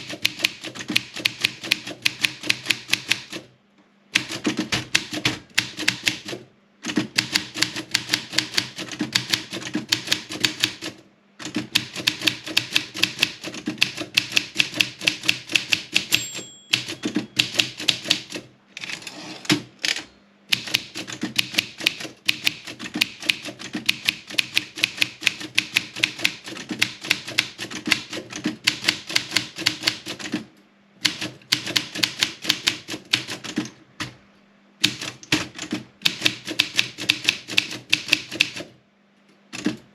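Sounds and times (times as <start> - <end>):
typewriter key strikes: 0.0 - 3.4, 4.2 - 18.5, 19.5 - 30.4, 31.0 - 33.7, 34.8 - 38.6
typewriter margin bell: 16.0 - 17.9.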